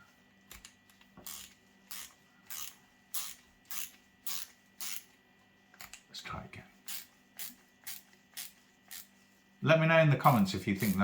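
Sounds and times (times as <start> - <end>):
ratchet screwdriver clicking: 0.5 - 5.1.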